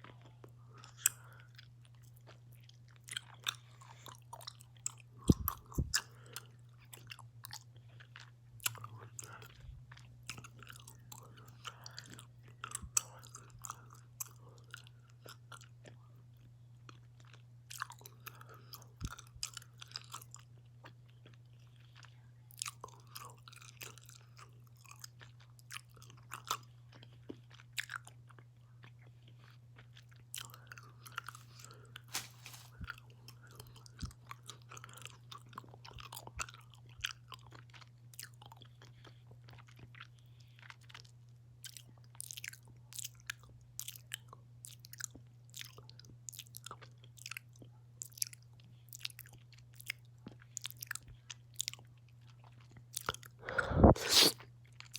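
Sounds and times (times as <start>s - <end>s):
chewing gummy candy: 0.0s - 54.9s
heavy breathing: 53.4s - 54.4s.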